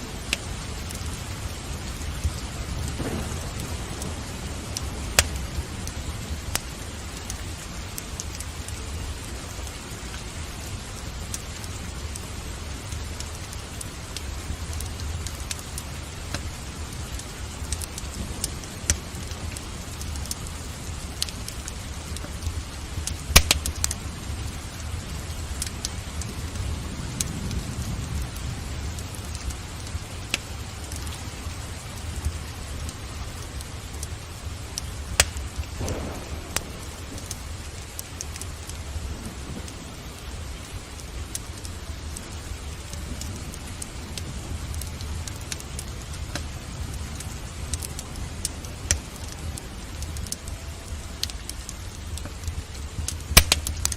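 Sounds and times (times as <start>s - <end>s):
steady rain: 0.0s - 53.9s
wood fire popping and crackling: 0.0s - 53.9s.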